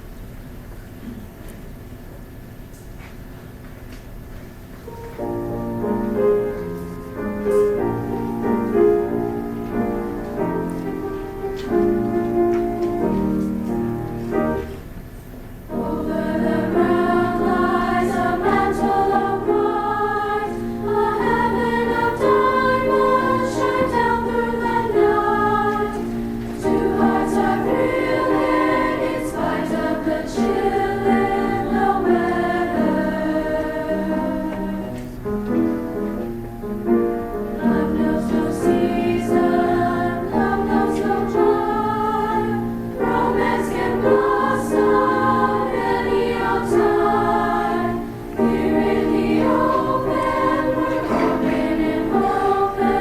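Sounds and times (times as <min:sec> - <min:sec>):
women's choir singing: 0:15.7 - 0:35.3, 0:37.2 - 0:53.0.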